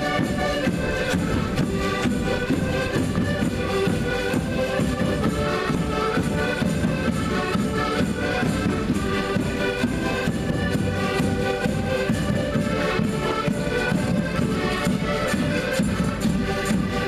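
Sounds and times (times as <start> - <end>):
concertinas playing folk tune: 0.0 - 17.0.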